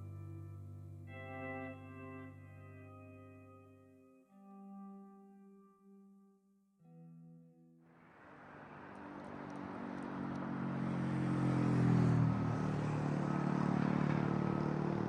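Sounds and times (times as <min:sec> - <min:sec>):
road noise: 0:07.9 - 0:15.0
vehicle engine: 0:07.9 - 0:15.0.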